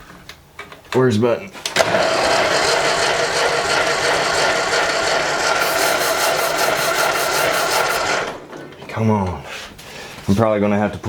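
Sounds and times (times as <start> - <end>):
starter motor cranking engine: 1.7 - 9.0.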